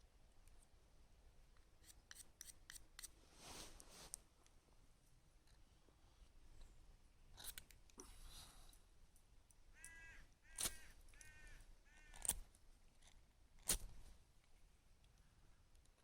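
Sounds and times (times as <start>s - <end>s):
distant crow cawing: 9.8s - 12.3s.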